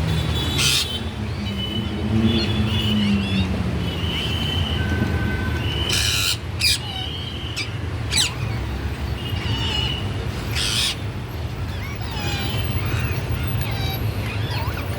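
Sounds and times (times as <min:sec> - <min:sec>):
parrot squawking: 0:00.6 - 0:01.0, 0:05.9 - 0:08.7, 0:10.5 - 0:11.0, 0:11.7 - 0:14.9.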